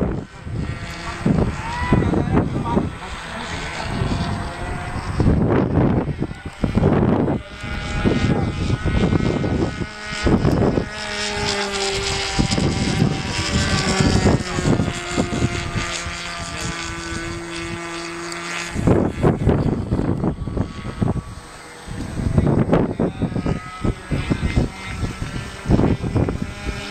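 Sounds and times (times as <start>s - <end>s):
model airplane motor droning: 0.0s - 26.9s
wind buffeting microphone: 0.0s - 26.9s.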